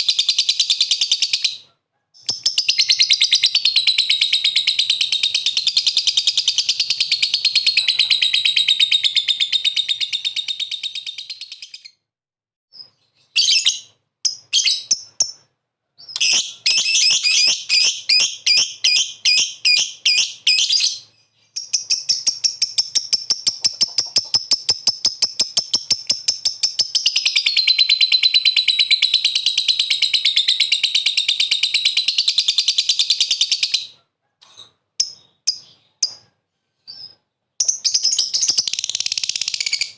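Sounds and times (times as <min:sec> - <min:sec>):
lovebird chattering trill: 0:02.2 - 0:11.9, 0:21.6 - 0:33.9.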